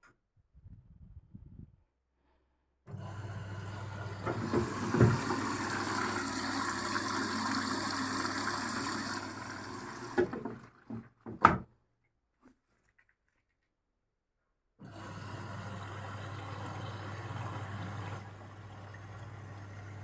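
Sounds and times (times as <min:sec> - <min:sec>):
washing machine filling with water: 0:02.9 - 0:11.4, 0:14.8 - 0:20.0.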